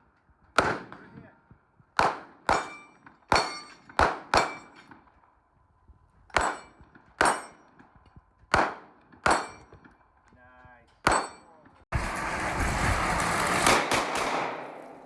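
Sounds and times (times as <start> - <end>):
gunshots with echoing tail: 0.6 - 1.3, 2.0 - 5.2, 6.3 - 7.8, 8.5 - 10.0, 11.0 - 11.6, 13.2 - 15.0.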